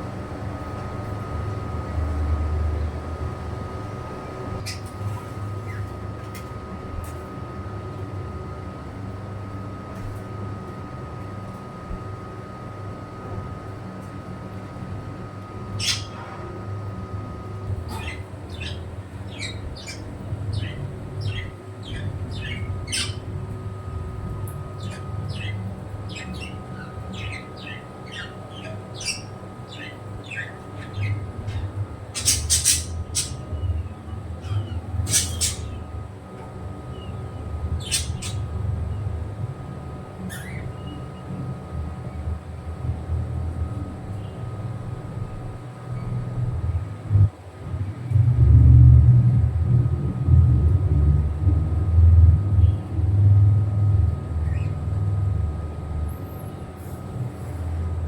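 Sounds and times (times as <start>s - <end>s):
steady low hum: 0.0s - 58.0s
pet birds chirping: 2.7s - 6.0s, 15.4s - 16.3s, 17.0s - 41.4s, 54.4s - 55.0s
birds squawking: 4.3s - 6.0s, 15.6s - 16.3s, 17.3s - 39.2s, 40.2s - 41.2s.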